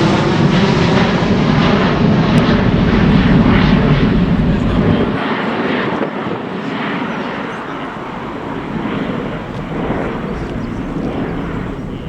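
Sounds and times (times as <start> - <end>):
aircraft engine rushing: 0.0 - 12.0.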